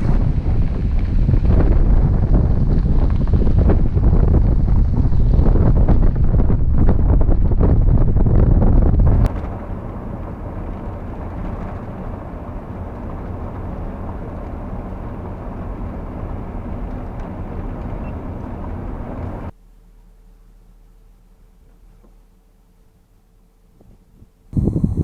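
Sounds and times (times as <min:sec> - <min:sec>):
vehicle engine and road noise: 0:00.0 - 0:21.6, 0:24.6 - 0:25.0
faint steady hum: 0:19.5 - 0:25.0.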